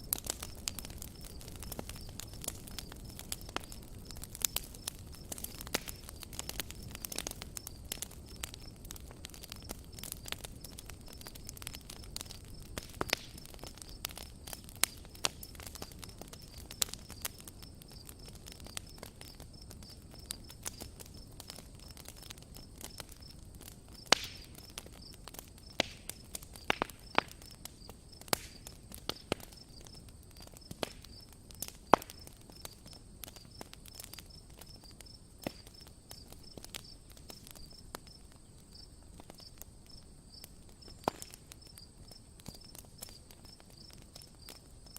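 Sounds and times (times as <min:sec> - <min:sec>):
campfire crackling and popping: 0:00.0 - 0:44.9
insects chirping: 0:00.0 - 0:44.9
soft rustle of flames: 0:00.0 - 0:44.9.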